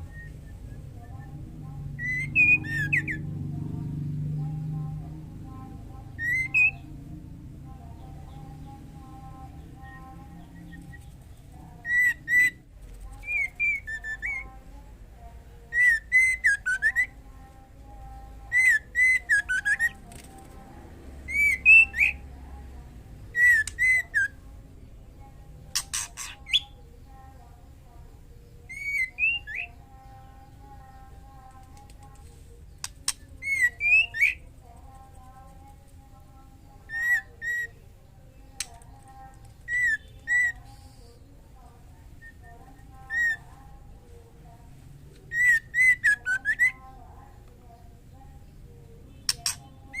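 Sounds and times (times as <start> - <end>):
sharp clicks: 31.6 - 33.3, 38.6 - 39.5, 49.3 - 49.6.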